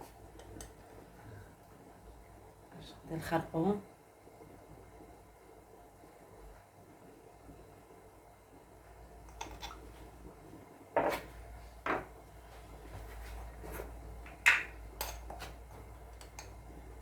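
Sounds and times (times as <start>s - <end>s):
utensils and dishes clinking: 9.3s - 9.9s, 14.5s - 15.5s.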